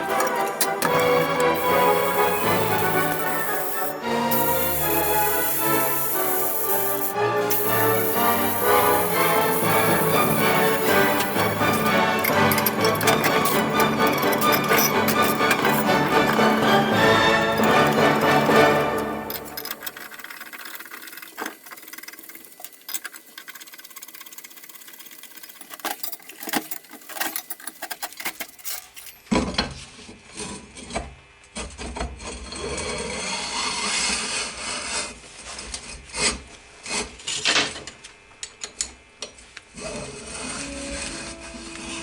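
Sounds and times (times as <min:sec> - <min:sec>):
tool scraping wood: 0:00.0 - 0:22.7.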